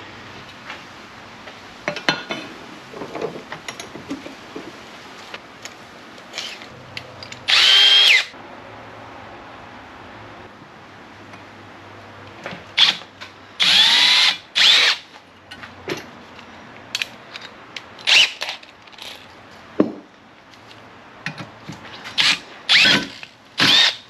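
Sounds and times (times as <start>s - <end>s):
power drill motor whining: 7.5s - 8.3s, 13.6s - 15.0s, 22.2s - 24.0s.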